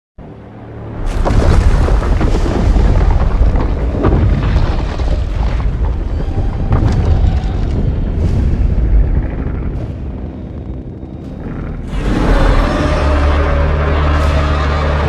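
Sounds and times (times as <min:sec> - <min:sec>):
monster crackling blast: 0:01.0 - 0:09.8.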